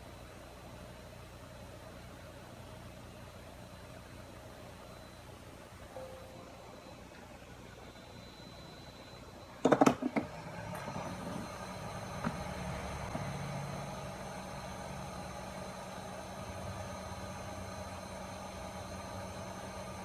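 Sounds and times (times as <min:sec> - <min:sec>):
hot-air station blowing: 0:01.4 - 0:20.0.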